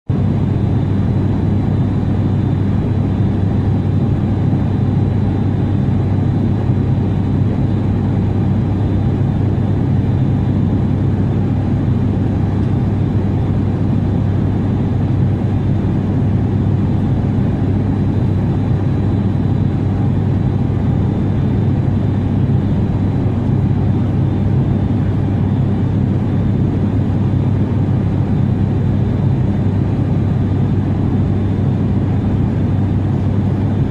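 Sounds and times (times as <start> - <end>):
airliner engine drone: 0.1 - 33.9.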